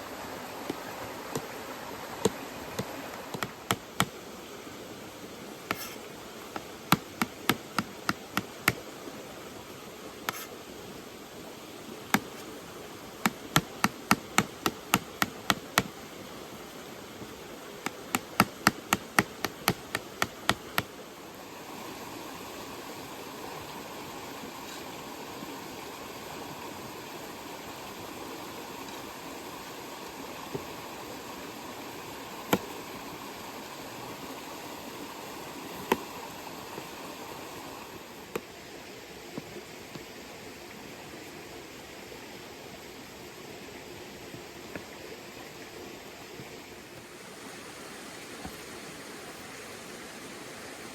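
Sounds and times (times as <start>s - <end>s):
steady background hiss: 0.0s - 50.9s
knife chopping on cutting board: 6.6s - 8.8s, 17.9s - 20.9s.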